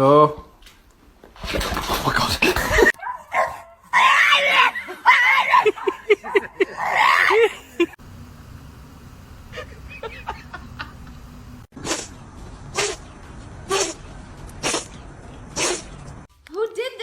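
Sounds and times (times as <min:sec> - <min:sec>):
person screaming and laughing: 0:04.0 - 0:08.0.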